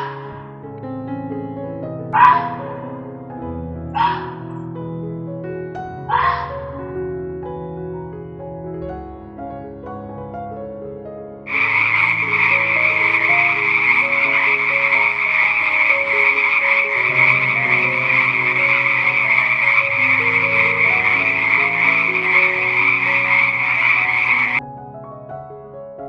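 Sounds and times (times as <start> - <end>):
chorus of croaking animals: 11.5 - 24.6.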